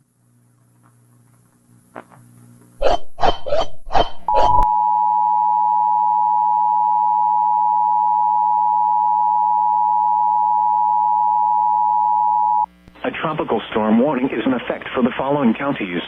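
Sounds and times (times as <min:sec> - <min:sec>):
two-tone alert beep: 0:04.0 - 0:07.1.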